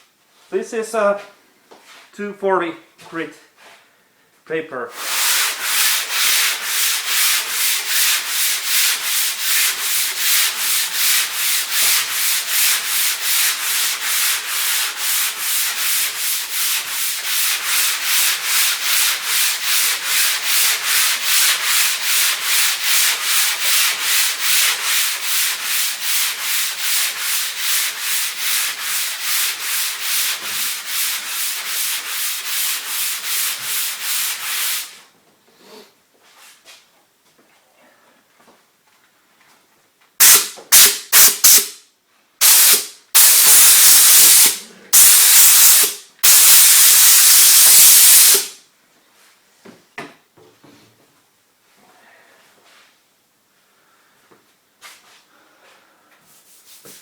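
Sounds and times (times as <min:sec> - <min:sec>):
sandpaper scraping on car hood: 0:05.0 - 0:35.0, 0:42.4 - 0:48.5.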